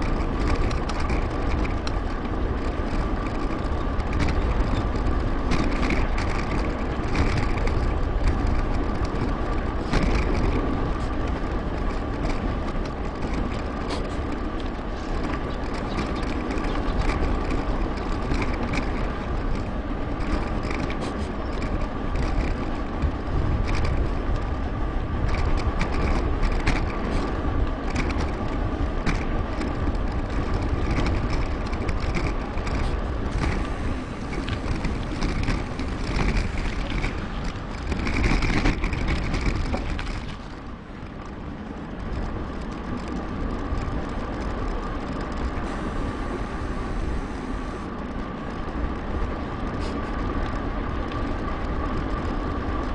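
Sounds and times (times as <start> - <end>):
bicycle tyre rumble: 0.0 - 52.9
bike clicks and rattles: 0.0 - 52.9
wind buffeting microphone: 0.0 - 52.9
faint steady hum: 43.1 - 52.9.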